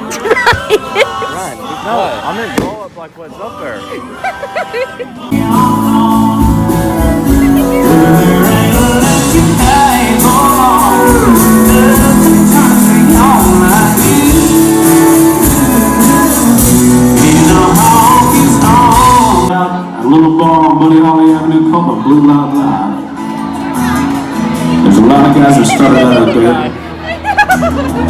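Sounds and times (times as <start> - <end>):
person singing: 0.0 - 2.2, 3.8 - 23.3
country band playing: 0.0 - 28.0.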